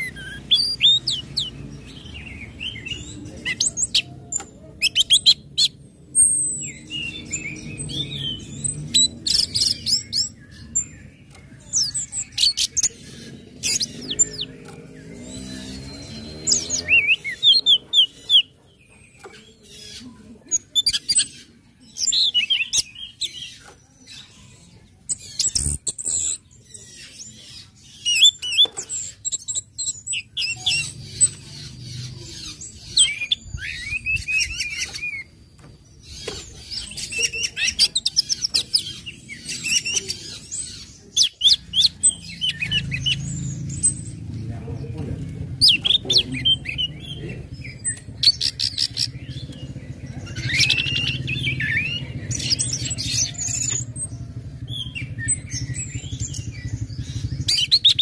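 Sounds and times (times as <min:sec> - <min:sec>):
bird chirping and whistling: 0:00.0 - 0:11.0, 0:11.7 - 0:18.5, 0:32.4 - 0:35.4, 0:45.6 - 0:54.0, 0:54.7 - 0:58.0.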